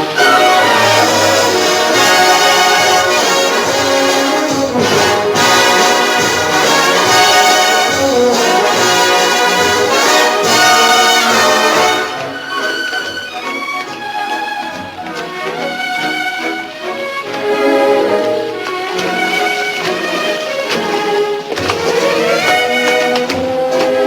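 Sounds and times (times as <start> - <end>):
big band music with brass: 0.0 - 13.5.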